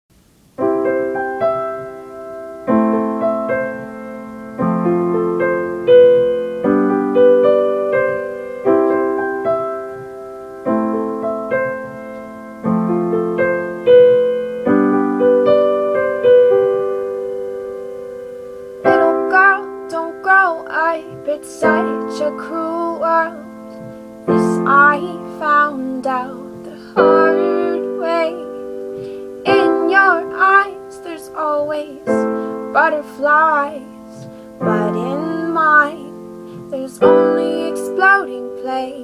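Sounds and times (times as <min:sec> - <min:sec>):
solo piano: 0:00.1 - 0:39.0
woman singing: 0:18.8 - 0:39.0.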